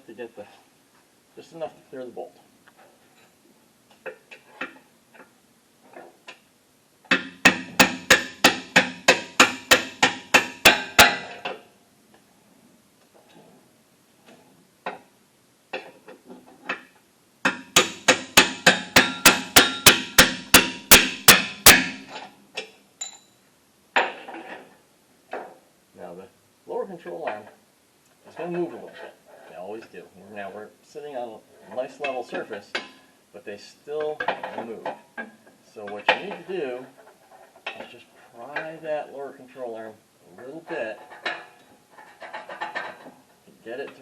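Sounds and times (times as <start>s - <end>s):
hammer striking metal bolt: 7.1s - 11.6s, 17.4s - 22.2s.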